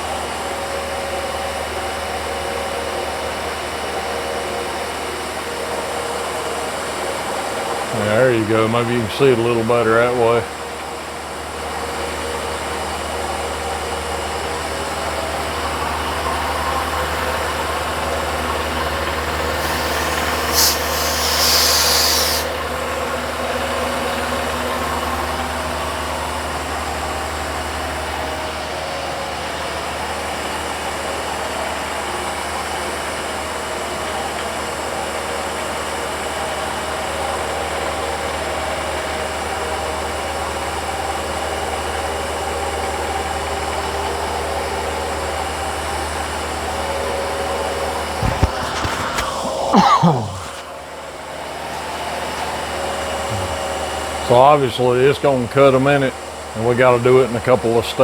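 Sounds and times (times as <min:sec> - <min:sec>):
milling machine cutting metal: 0:19.3 - 0:22.6
brief hiss: 0:19.5 - 0:22.6.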